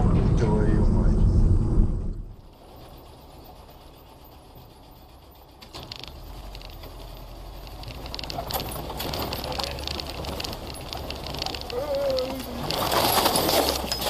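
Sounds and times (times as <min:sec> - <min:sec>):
car road noise: 0:00.0 - 0:14.0
light clicks and rattles: 0:05.3 - 0:14.0.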